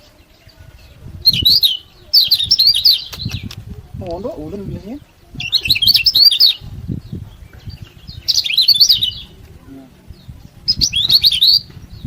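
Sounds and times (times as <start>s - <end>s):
bird chirping rapidly: 1.2s - 3.5s, 5.4s - 6.6s, 7.4s - 9.4s, 10.2s - 12.0s.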